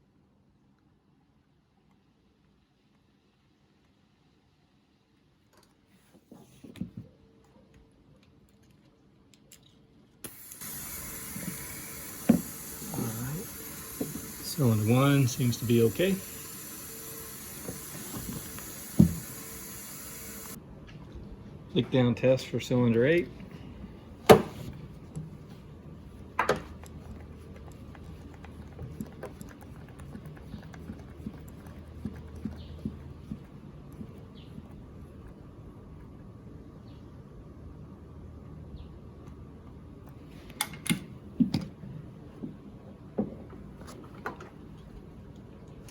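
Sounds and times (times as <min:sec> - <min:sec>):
compressed air hissing: 0:10.3 - 0:20.6.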